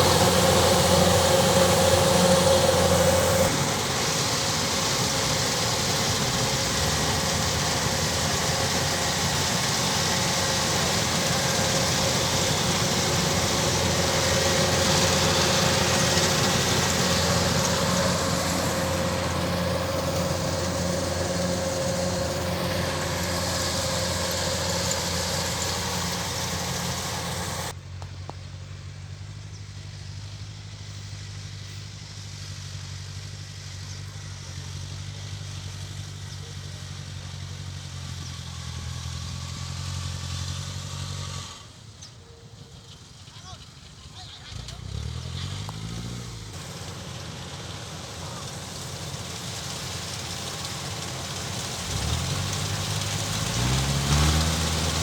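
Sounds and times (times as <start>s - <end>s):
broad mechanical hiss: 0.0s - 27.7s
diesel engine hum: 0.0s - 55.0s.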